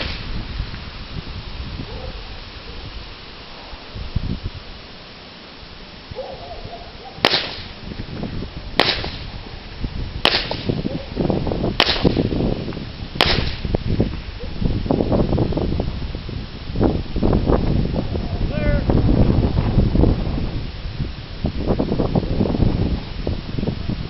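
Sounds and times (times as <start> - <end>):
rifle shots: 7.2 - 7.8, 8.8 - 9.3, 10.2 - 10.8, 11.8 - 12.3, 13.2 - 13.7.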